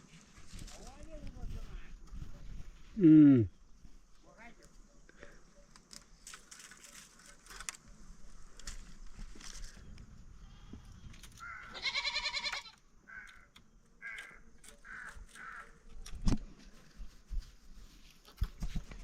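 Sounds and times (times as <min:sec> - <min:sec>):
goat bleating: 0:11.7 - 0:12.8.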